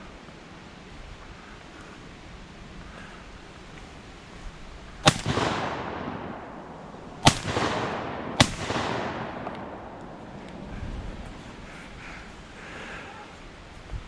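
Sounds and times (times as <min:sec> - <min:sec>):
shotgun shots echoing: 0:05.0 - 0:10.6.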